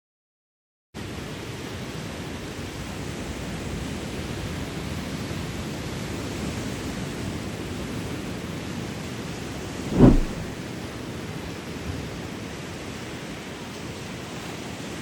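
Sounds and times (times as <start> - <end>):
steady rushing noise: 9.8 - 10.6.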